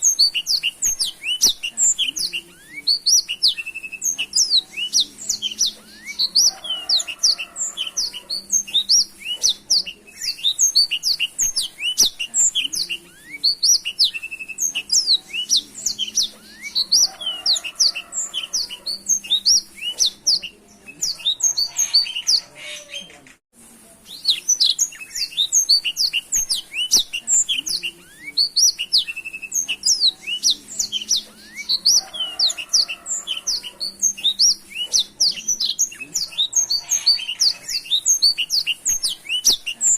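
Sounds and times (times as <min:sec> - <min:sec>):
canary singing chirps and trills: 0:00.0 - 0:23.4, 0:24.0 - 0:39.9.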